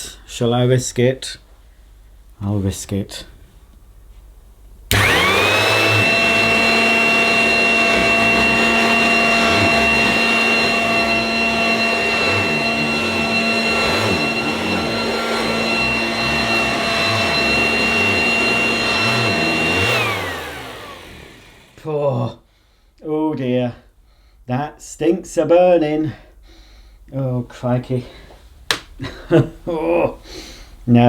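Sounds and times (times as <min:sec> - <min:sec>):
handheld vacuum cleaner whining: 0:04.9 - 0:21.9
vacuum motor winding down: 0:04.9 - 0:21.9.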